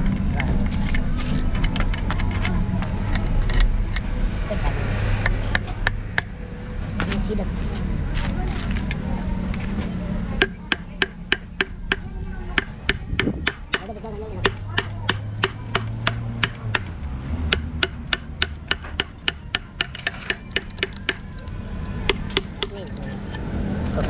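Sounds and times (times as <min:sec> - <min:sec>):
hammering on metal: 0:10.4 - 0:21.3, 0:22.0 - 0:22.9.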